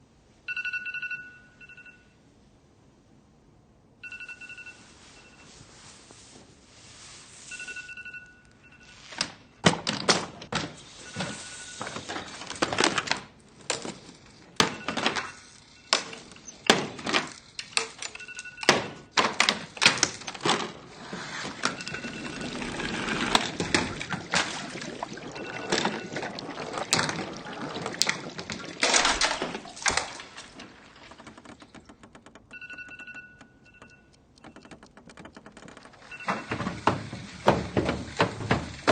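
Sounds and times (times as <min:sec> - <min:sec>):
alarm clock beeping: 0:00.5 - 0:02.1, 0:04.0 - 0:05.6, 0:07.5 - 0:09.1, 0:10.9 - 0:12.2, 0:14.6 - 0:17.0, 0:18.0 - 0:19.2, 0:21.5 - 0:26.6, 0:32.5 - 0:35.0, 0:36.0 - 0:36.8.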